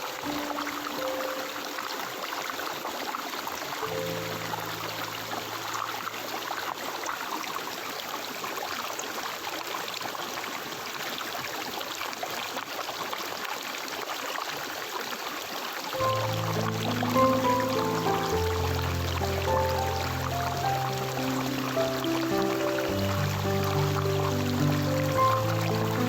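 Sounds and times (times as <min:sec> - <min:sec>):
stream water trickling: 0:00.0 - 0:26.0
low sustained music notes: 0:03.8 - 0:06.4, 0:16.0 - 0:26.0.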